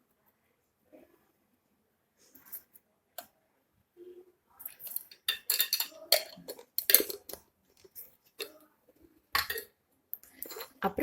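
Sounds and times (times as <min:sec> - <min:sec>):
utensils clinking against bowl: 0:04.7 - 0:07.4, 0:09.4 - 0:10.8.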